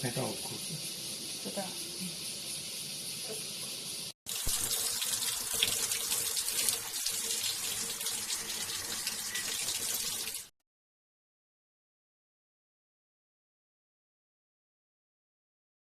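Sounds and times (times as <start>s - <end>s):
water running from tap: 0.0s - 10.5s.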